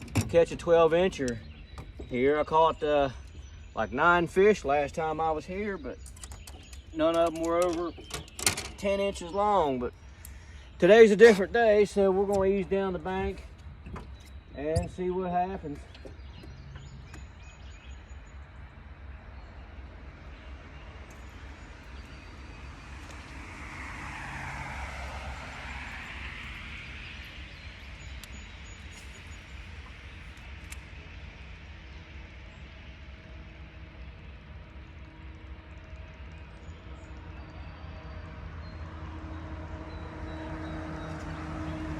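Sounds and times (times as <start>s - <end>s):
engine passing by: 20.1s - 30.1s, 35.3s - 41.9s.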